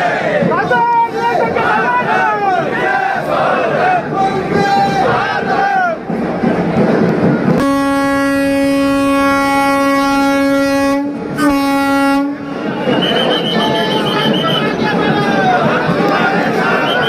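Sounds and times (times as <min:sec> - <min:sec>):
horn blasts: 0:07.6 - 0:15.1.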